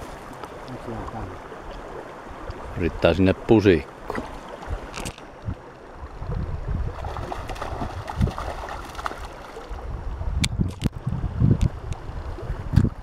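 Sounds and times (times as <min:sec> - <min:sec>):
water sloshing: 0:03.8 - 0:09.9
wind buffeting microphone: 0:04.6 - 0:13.0.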